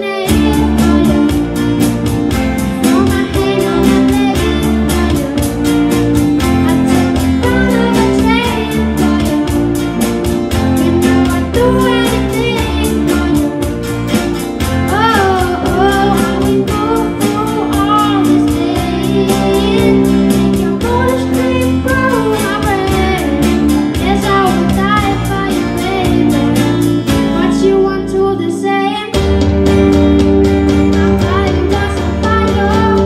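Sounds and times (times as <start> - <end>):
young voices singing: 0.0 - 29.2, 30.8 - 33.0
guitar: 0.0 - 33.0
steady drum beat: 0.3 - 27.3, 29.2 - 33.0.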